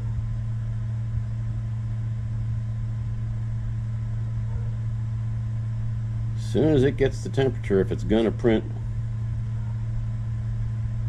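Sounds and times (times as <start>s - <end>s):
fan hiss: 0.0s - 11.0s
three d printer low hum: 0.0s - 11.0s.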